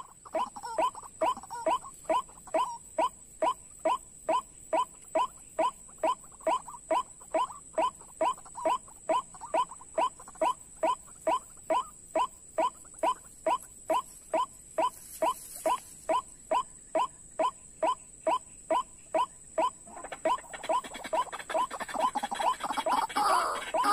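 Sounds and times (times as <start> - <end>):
waterhen calling: 18.7 - 23.9.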